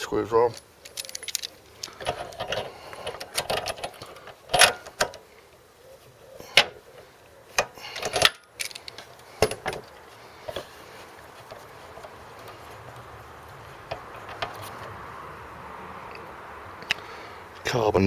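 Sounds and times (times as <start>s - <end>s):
metal tools clinking and rattling: 0.4s - 4.8s, 7.9s - 9.8s.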